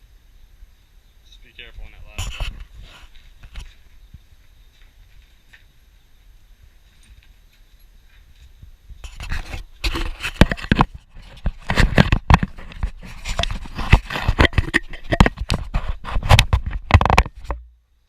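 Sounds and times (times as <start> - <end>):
rustling: 1.6 - 17.7
knocks and scrapes: 1.8 - 5.7, 6.8 - 17.7.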